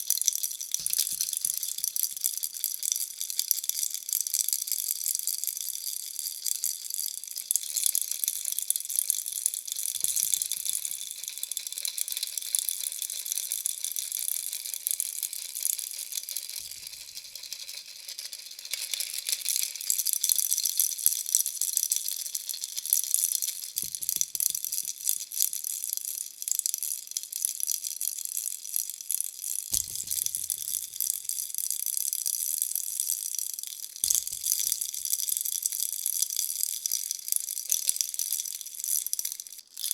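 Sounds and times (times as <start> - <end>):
baby rattle shaken: 0.7 - 2.5, 10.0 - 13.7, 16.1 - 25.4, 29.8 - 31.5, 34.0 - 36.4.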